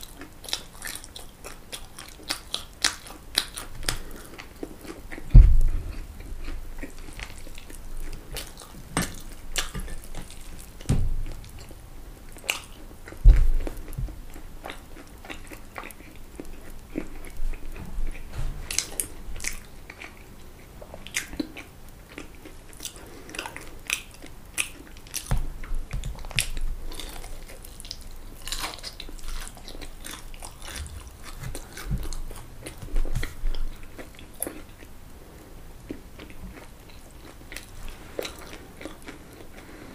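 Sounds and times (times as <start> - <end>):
chewing crisp fried food: 0.0 - 39.9
dull low thumps: 5.2 - 6.7, 10.8 - 11.6, 13.2 - 14.3.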